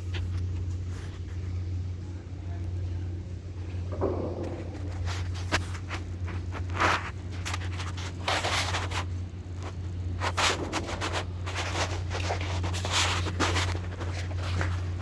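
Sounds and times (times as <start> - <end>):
short scraping noises: 10.2 - 15.0.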